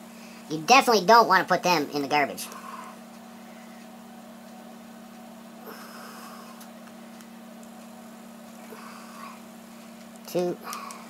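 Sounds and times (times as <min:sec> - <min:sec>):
low hum: 0:00.0 - 0:11.0.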